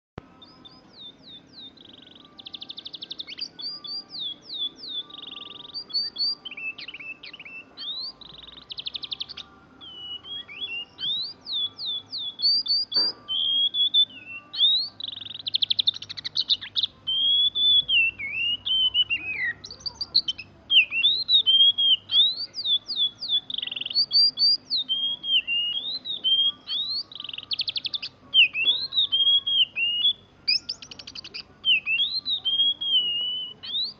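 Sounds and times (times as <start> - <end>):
bird singing whistles and trills: 0.3 - 33.9.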